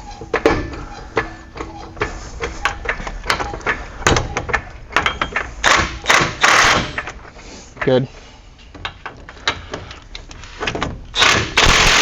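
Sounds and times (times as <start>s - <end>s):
harsh noisy bursts: 11.2s - 12.0s.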